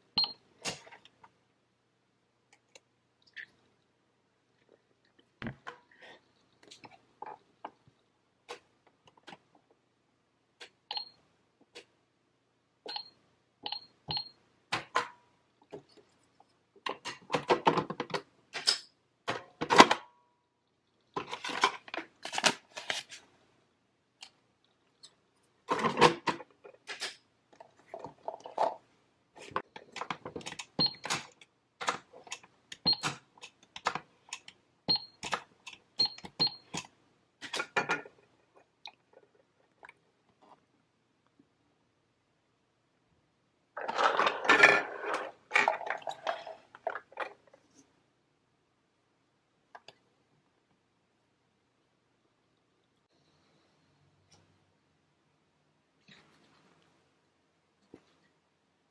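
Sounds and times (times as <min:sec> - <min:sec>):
plastic toys clicking and clattering: 0:25.7 - 0:28.8, 0:29.4 - 0:34.6, 0:35.2 - 0:40.0, 0:43.8 - 0:47.8.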